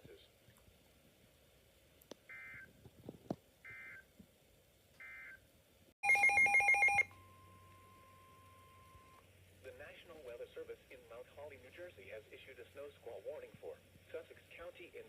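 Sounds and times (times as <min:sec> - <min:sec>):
faint steady tone: 0:05.0 - 0:11.5.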